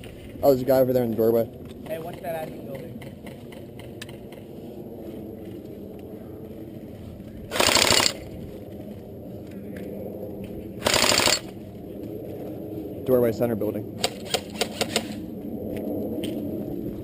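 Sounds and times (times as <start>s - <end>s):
airsoft rifle full-auto bursts: 7.5s - 8.2s, 10.8s - 11.5s, 14.0s - 15.2s.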